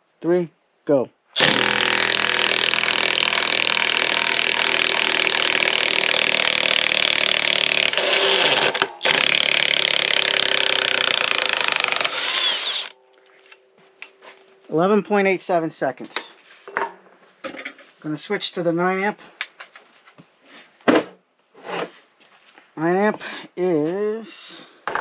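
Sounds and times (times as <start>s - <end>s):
impact wrench hammering screw: 1.4s - 12.9s.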